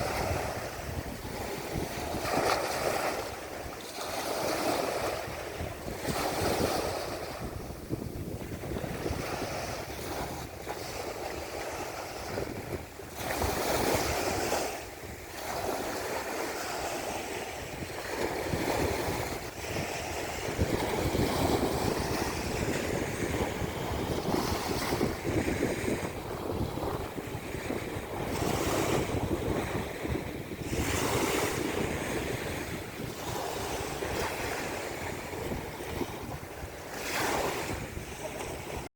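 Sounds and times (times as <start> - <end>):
sea waves breaking on shore: 0.0 - 38.9
wind buffeting microphone: 0.0 - 38.9.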